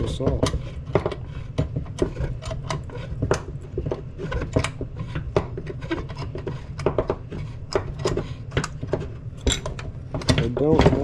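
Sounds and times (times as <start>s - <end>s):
low steady hum: 0.0s - 11.0s
metal parts clicking and knocking: 7.7s - 11.0s.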